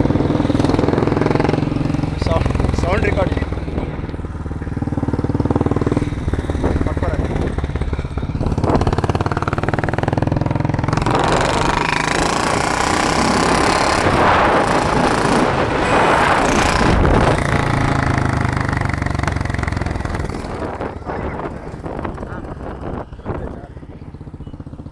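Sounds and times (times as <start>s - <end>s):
motorcycle engine rattling: 0.0s - 24.9s.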